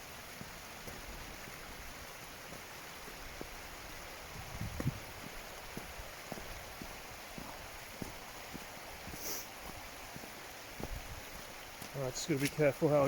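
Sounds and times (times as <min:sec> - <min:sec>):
running water rushing: 0:00.0 - 0:13.0
footsteps on stones: 0:04.6 - 0:13.0.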